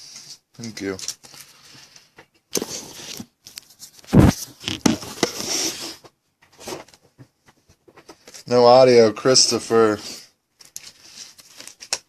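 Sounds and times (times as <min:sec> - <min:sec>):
rustling and scraping on a table: 0:01.0 - 0:08.5, 0:09.5 - 0:12.0
loud dull thump: 0:04.1 - 0:04.4.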